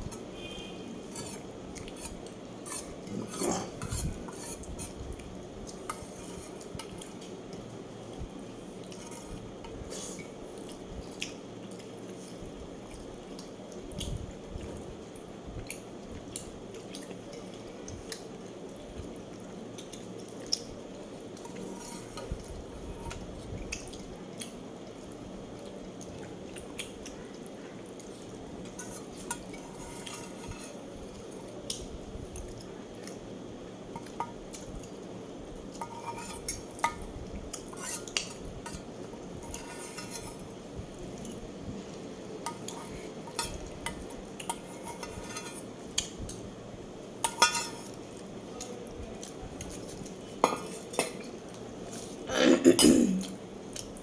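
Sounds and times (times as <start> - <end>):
low background hum: 0.0 - 54.0
utensils clinking on a plate: 37.6 - 40.5, 42.4 - 45.7, 47.2 - 48.0, 50.4 - 51.4.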